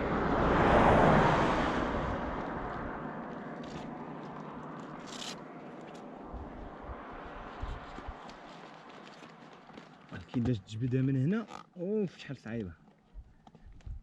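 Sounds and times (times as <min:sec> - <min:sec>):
vehicle passing: 0:00.0 - 0:10.3.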